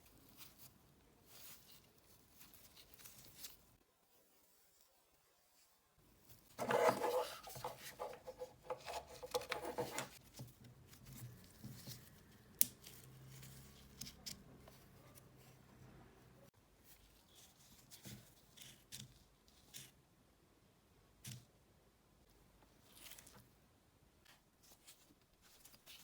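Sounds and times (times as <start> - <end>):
hands scraping tool parts: 6.6 - 10.2.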